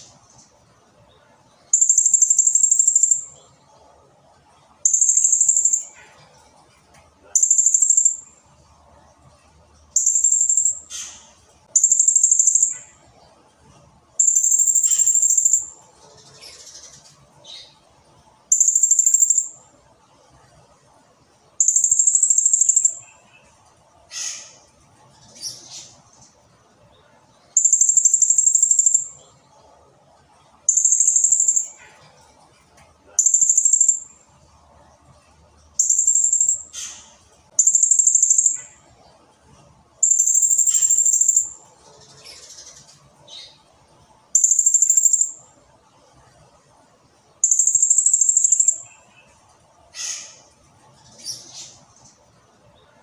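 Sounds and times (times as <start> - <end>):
parrot high buzzy trills: 40.0 - 41.6.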